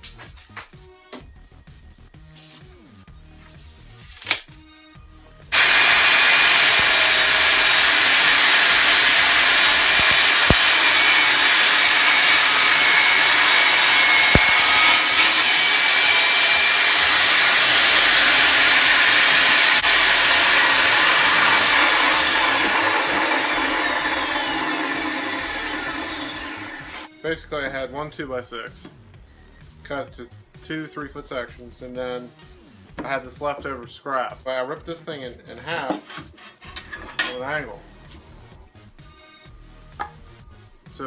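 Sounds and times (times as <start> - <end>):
power saw ripping wood: 5.5 - 27.1.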